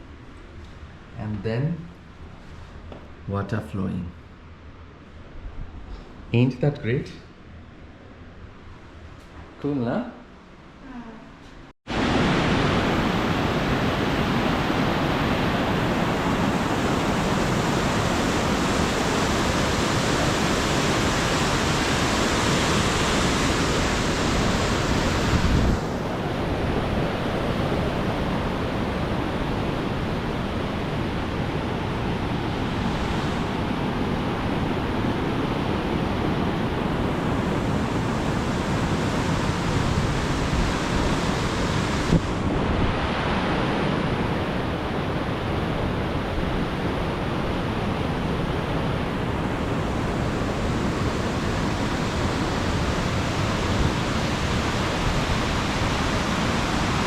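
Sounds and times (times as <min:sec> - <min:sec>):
waterfall roaring: 0:11.9 - 0:57.0
wind on microphone: 0:11.9 - 0:57.0.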